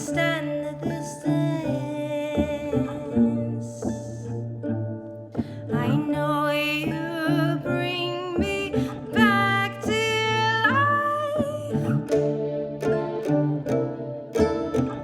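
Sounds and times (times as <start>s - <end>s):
woman singing wordlessly: 0.0s - 4.3s, 5.7s - 11.9s
plucked mandolin: 0.0s - 15.0s.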